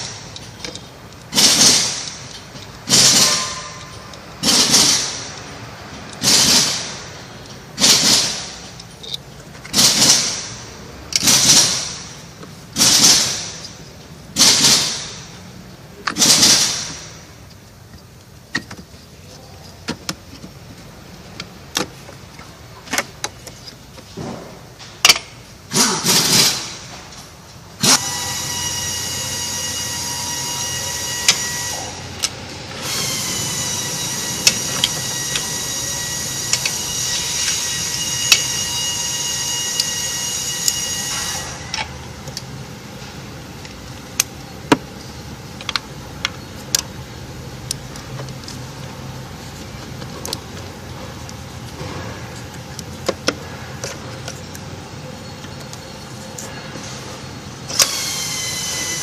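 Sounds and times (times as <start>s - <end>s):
metal tools clicking and clinking: 0.2s - 5.1s, 7.4s - 10.2s
power tool motor whirring: 32.8s - 41.5s, 57.7s - 59.0s.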